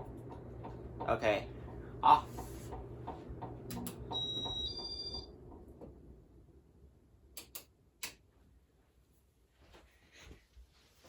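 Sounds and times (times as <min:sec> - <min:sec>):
fan ticking: 0:00.0 - 0:05.9
ceiling fan motor hum: 0:00.0 - 0:11.0
sharp clicks: 0:03.4 - 0:04.1, 0:07.4 - 0:08.2.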